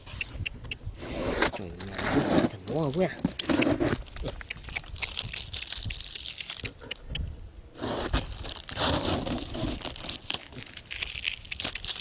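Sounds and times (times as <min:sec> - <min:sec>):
crunching and crinkling handling: 0:01.5 - 0:06.8, 0:07.8 - 0:12.0.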